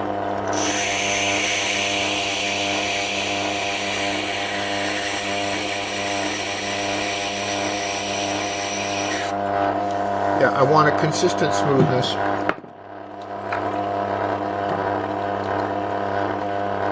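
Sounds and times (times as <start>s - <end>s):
sharpener motor humming: 0.4s - 12.4s
tool scraping spinning stone: 0.5s - 10.7s.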